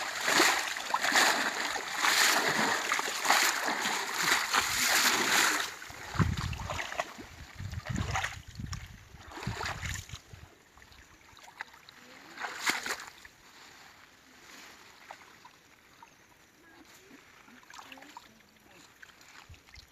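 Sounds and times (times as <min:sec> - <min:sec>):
water splashing and sloshing: 0:00.0 - 0:19.9.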